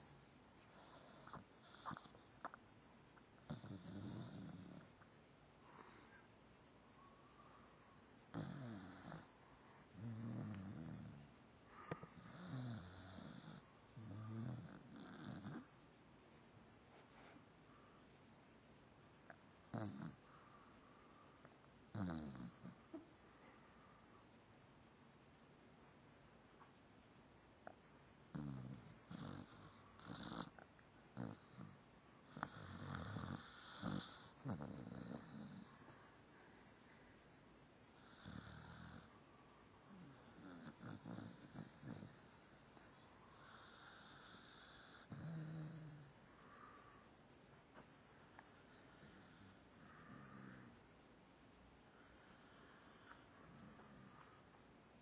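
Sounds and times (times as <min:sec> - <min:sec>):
snoring: 0:00.7 - 0:02.3, 0:03.4 - 0:04.9, 0:08.3 - 0:15.7, 0:19.7 - 0:20.2, 0:21.9 - 0:22.8, 0:28.3 - 0:30.6, 0:31.2 - 0:35.8, 0:38.0 - 0:39.1, 0:40.0 - 0:46.8, 0:48.7 - 0:50.8, 0:52.0 - 0:54.4.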